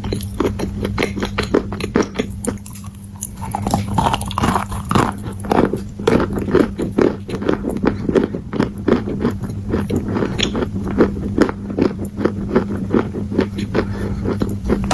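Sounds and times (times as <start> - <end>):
chewing crunchy clay: 0.0 - 14.9
steady low hum: 0.0 - 14.9.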